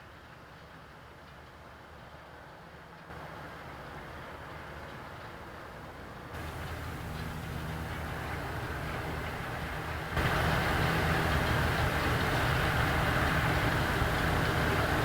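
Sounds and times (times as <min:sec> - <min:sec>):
tractor engine under load: 0:06.4 - 0:15.0.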